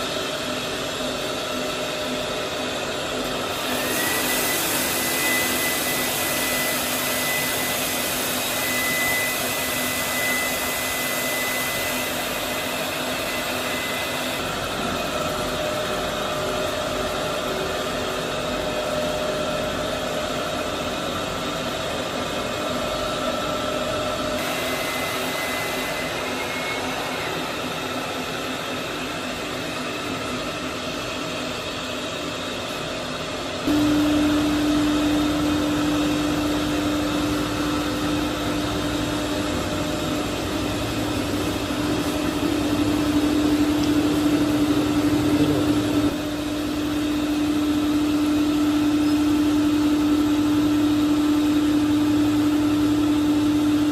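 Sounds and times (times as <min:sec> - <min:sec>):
factory machinery humming: 0:00.0 - 0:53.9
loud hum with low tone: 0:00.0 - 0:53.9
faint whine tones: 0:33.7 - 0:46.2.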